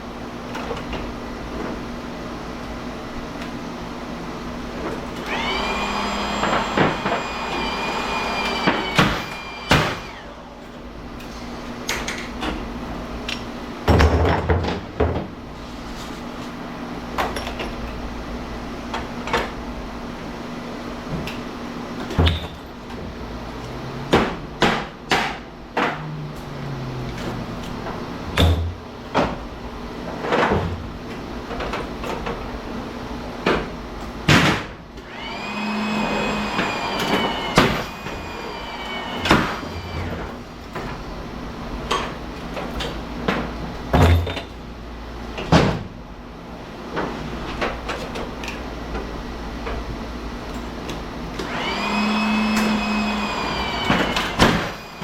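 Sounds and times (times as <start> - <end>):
power tool motor whining: 5.2 - 10.7, 35.0 - 40.3, 51.4 - 55.0.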